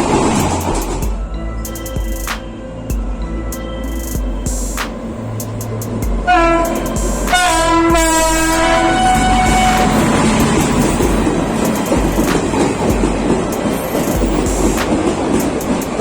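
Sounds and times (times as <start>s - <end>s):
train rumbling and clattering past: 3.0s - 16.0s
train horn blasts: 6.2s - 14.1s.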